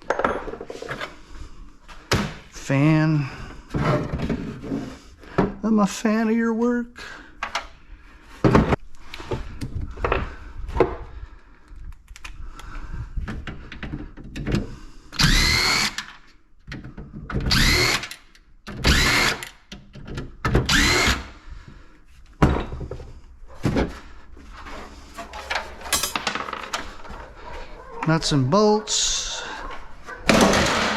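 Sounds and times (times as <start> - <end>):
power drill whining: 15.2 - 16.2, 17.5 - 18.2, 18.8 - 19.6, 20.7 - 21.4
metal and plastic parts clattering: 25.2 - 27.2, 30.3 - 30.9.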